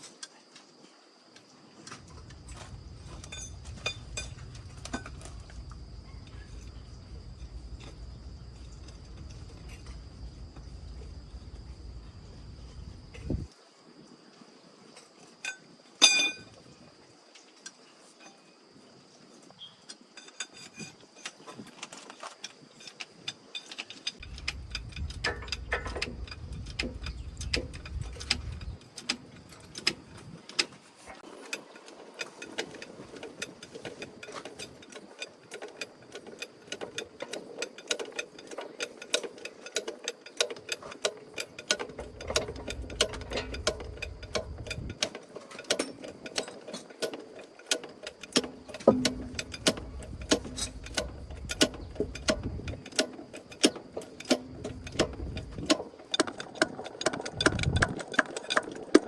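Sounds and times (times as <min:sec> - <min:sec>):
metallic clink with ring: 0:15.5 - 0:16.5
ratchet wrench clicking: 0:23.6 - 0:30.7.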